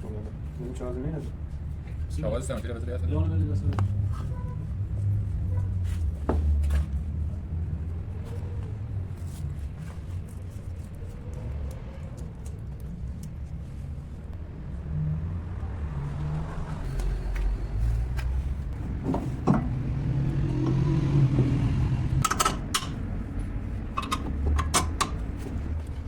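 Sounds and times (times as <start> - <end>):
low engine-like rumble: 0.0 - 26.0
metallic clicks and knocks: 22.2 - 23.1, 23.8 - 25.9.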